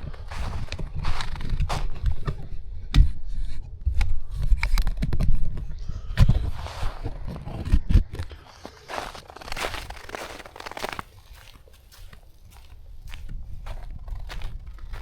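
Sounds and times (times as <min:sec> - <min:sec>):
footsteps crunching on icy snow: 0:00.0 - 0:02.1, 0:06.5 - 0:15.0
rumble across microphone: 0:00.0 - 0:15.0.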